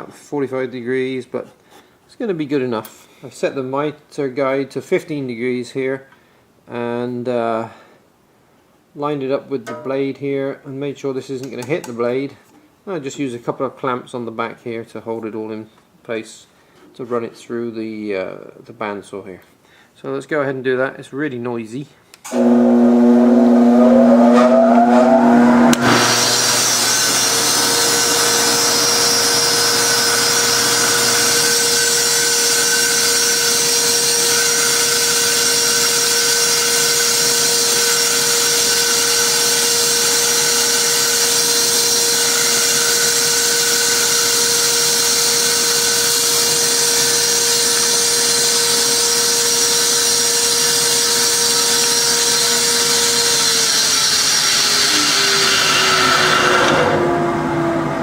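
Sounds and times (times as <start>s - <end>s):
bandsaw cutting wood: 22.3s - 57.9s.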